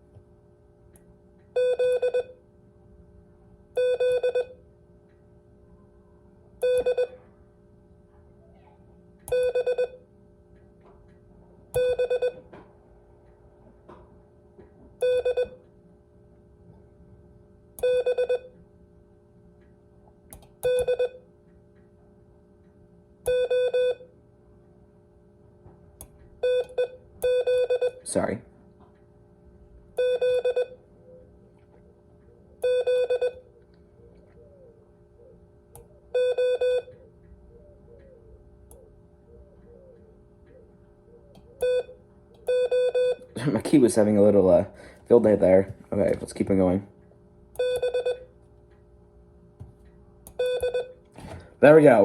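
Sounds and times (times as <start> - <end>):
morse code tone: 1.6 - 2.4, 3.8 - 4.6, 11.8 - 12.4, 15.0 - 15.6, 17.8 - 18.6, 20.6 - 21.2, 23.3 - 24.1, 26.4 - 28.0, 30.0 - 30.8, 32.6 - 33.5, 36.2 - 36.9, 41.6 - 43.3, 47.6 - 48.3, 50.4 - 51.0.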